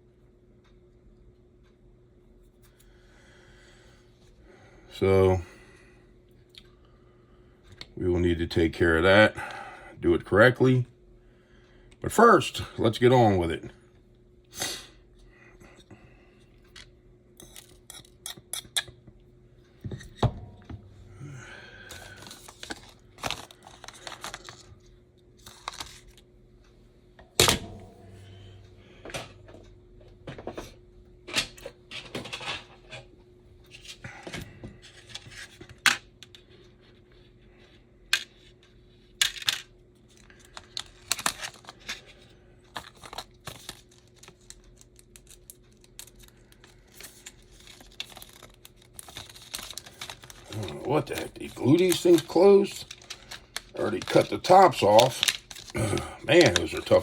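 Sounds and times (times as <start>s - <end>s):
plastic packets crinkling and tearing: 21.9s - 24.8s, 25.4s - 26.2s, 40.2s - 57.0s.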